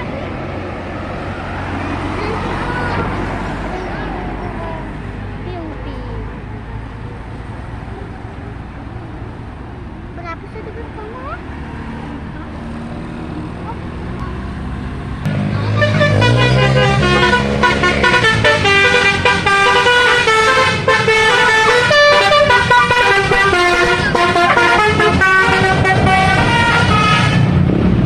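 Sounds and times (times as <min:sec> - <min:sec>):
bus engine running: 0:00.0 - 0:28.0
musical air horn tune: 0:15.7 - 0:27.6.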